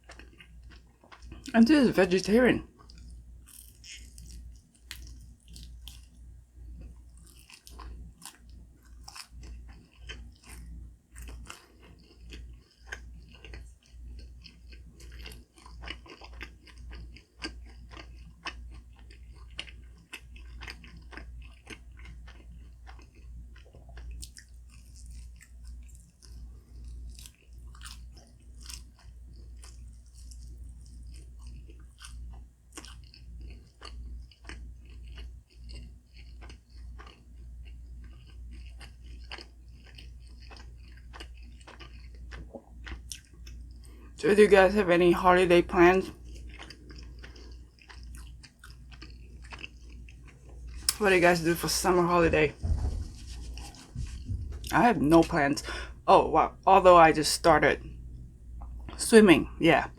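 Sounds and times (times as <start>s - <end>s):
close-miked chewing food: 0.0s - 59.9s.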